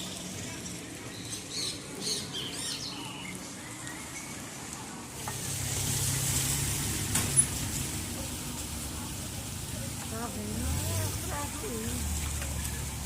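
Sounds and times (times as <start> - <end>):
tyres hissing through water: 3.2 - 13.0
vehicle engine hum: 5.0 - 13.0.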